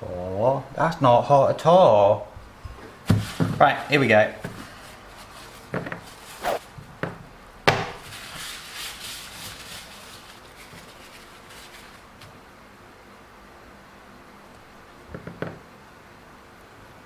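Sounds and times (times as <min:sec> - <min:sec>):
hard objects knocking: 0:06.8 - 0:08.0, 0:15.1 - 0:15.6.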